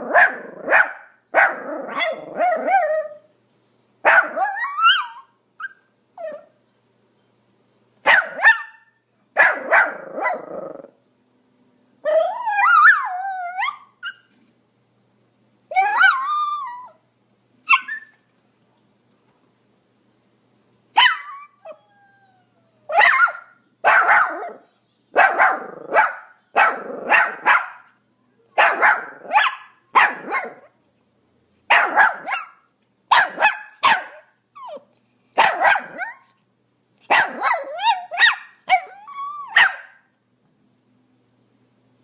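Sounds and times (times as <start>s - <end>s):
small dog barking: 0.0s - 3.2s, 4.0s - 5.2s, 8.0s - 10.6s, 21.0s - 21.5s, 22.9s - 28.0s, 28.6s - 30.8s, 31.7s - 34.8s, 35.4s - 36.3s, 37.0s - 40.1s.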